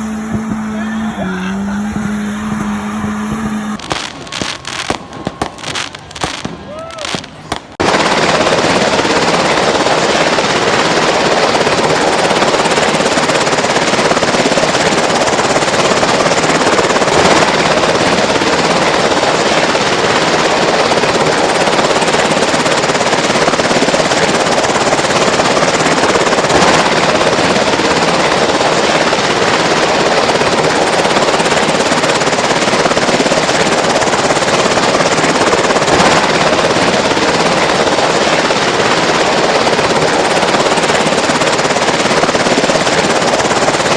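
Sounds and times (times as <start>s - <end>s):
helicopter hovering: 0.0s - 43.9s.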